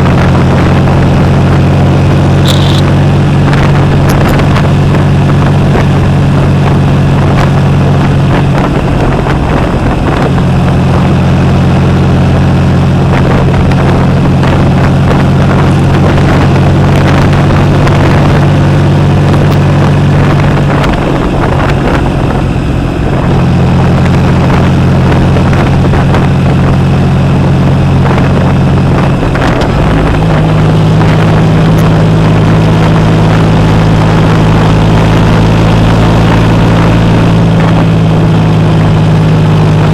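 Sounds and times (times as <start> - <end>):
motorcycle engine running loud: 0.0 - 39.9.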